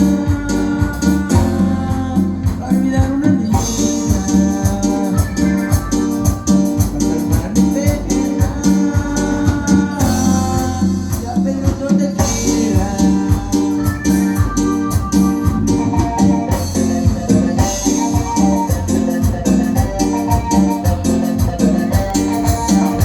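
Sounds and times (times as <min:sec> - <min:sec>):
band playing cumbia music: 0:00.0 - 0:23.0
steady percussion beat: 0:00.0 - 0:23.0.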